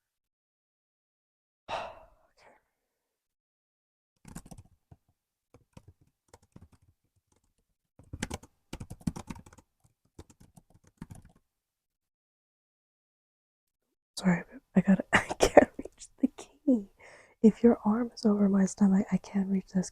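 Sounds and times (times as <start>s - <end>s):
laptop keyboard typing: 4.2s - 11.4s.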